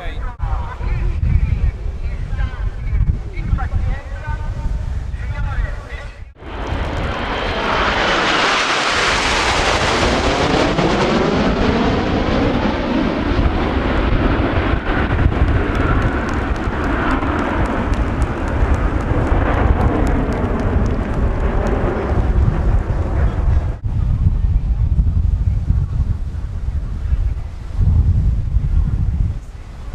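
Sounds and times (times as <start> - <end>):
jet aircraft flying past: 6.3 - 23.9.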